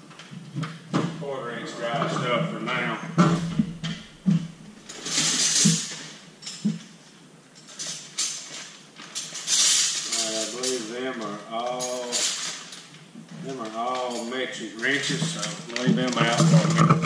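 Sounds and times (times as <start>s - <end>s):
person speaking: 1.2s - 4.4s, 10.1s - 12.2s, 13.4s - 17.0s
metal tools clinking in drawer: 4.8s - 6.8s, 7.6s - 12.9s, 13.6s - 17.0s.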